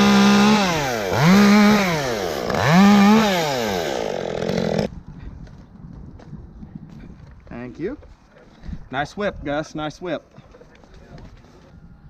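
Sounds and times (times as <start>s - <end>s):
chainsaw revving: 0.0s - 4.9s.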